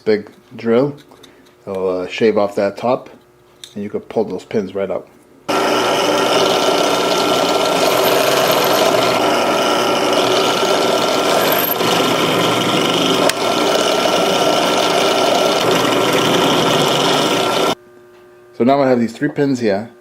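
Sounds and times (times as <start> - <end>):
drill click: 5.5 - 17.8
electric drill whining: 5.5 - 17.8.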